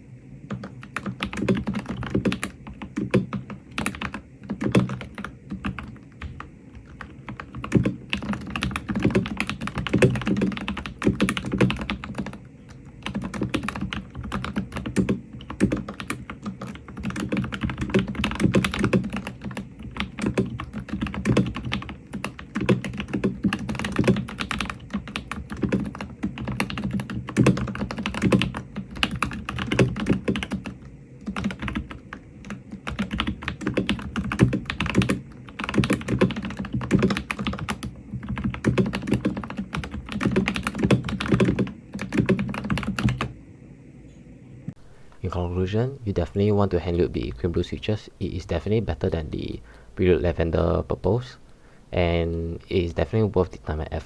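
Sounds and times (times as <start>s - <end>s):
fast typing on mechanical keyboard: 0.5s - 43.3s.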